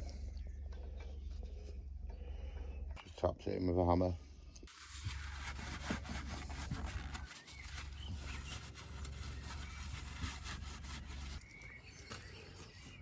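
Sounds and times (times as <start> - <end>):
steady low hum: 0.0 - 11.4.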